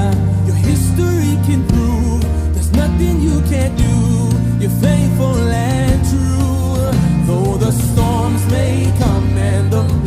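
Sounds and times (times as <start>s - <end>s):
background music: 0.0s - 10.0s.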